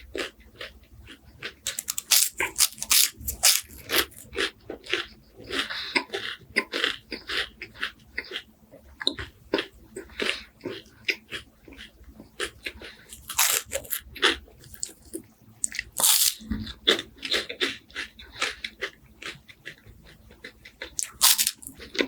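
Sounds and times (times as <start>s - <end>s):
crunching crispy wafers: 1.7s - 5.7s, 12.8s - 19.4s, 20.4s - 22.0s.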